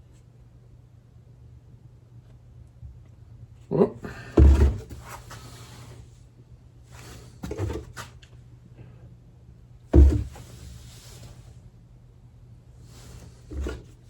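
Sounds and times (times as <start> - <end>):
knocks on workbench: 4.4 - 5.0, 10.0 - 10.4
low hollow thump: 4.4 - 5.0, 9.9 - 10.4.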